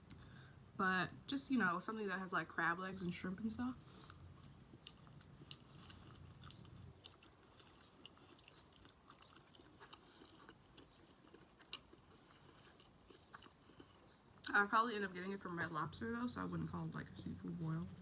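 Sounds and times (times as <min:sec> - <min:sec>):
chewing food: 0:03.9 - 0:14.6
mouth clicks and crunches: 0:04.0 - 0:14.6.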